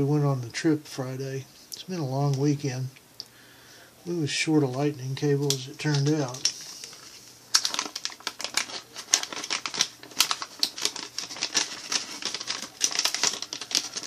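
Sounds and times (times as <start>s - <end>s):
cable handling clicks and rustles: 5.4s - 14.0s.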